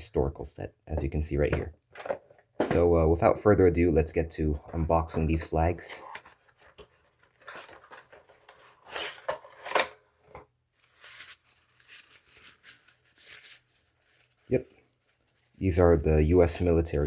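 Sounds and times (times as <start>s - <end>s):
package packaging tearing and rustling: 6.1s - 10.1s, 10.9s - 15.5s.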